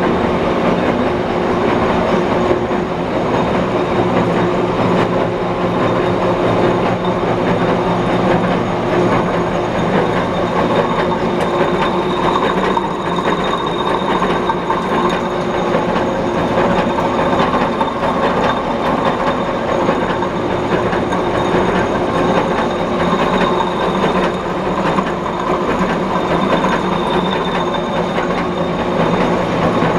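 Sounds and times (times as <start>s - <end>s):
machine gear-train hum: 0.0s - 29.9s
metallic cutting chatter: 8.1s - 29.7s.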